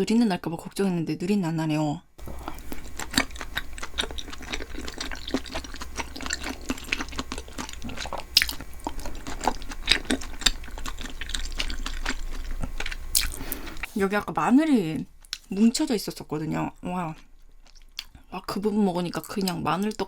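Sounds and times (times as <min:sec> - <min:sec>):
wet chewing sounds: 0:02.2 - 0:14.0, 0:17.0 - 0:18.3.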